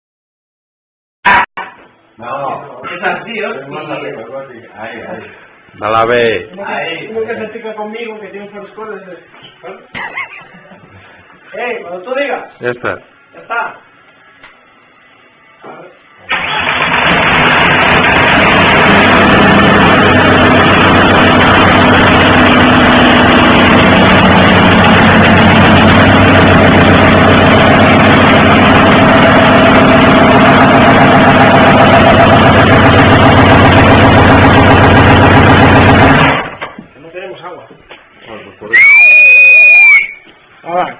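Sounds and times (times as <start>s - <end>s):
diesel engine starting and running: 16.3s - 36.6s.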